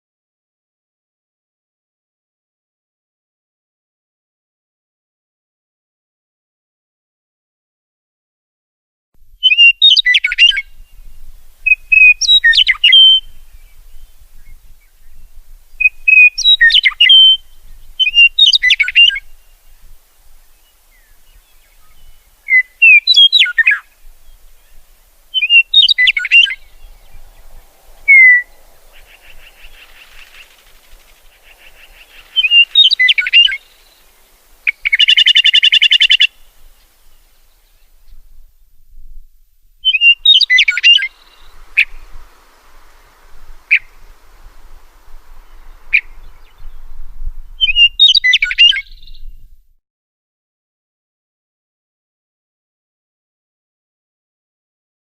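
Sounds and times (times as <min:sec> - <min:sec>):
songbird singing: 0:09.2 - 0:49.8.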